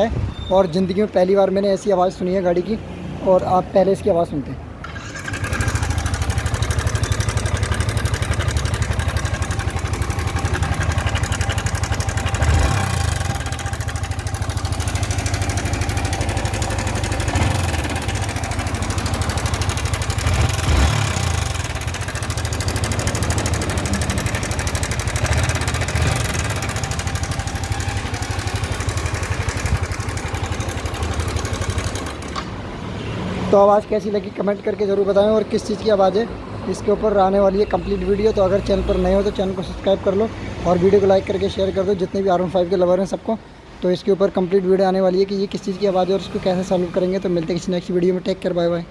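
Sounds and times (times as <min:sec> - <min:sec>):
abnormal engine noise: 0:04.8 - 0:32.5
motorcycle engine idling: 0:04.8 - 0:32.5.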